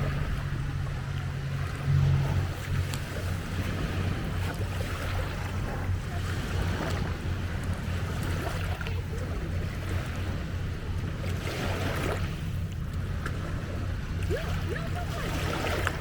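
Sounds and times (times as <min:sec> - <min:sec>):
low engine hum: 0:00.0 - 0:16.0
waves lapping at shore: 0:00.0 - 0:16.0
wind: 0:00.0 - 0:16.0.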